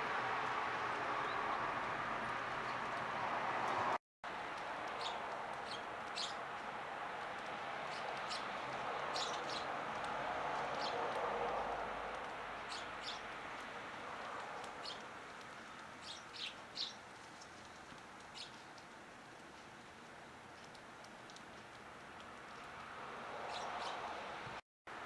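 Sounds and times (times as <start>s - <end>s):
small birds chirping: 4.9s - 6.6s, 7.8s - 9.8s, 10.7s - 11.1s, 12.2s - 13.4s, 14.1s - 20.9s, 23.5s - 24.1s.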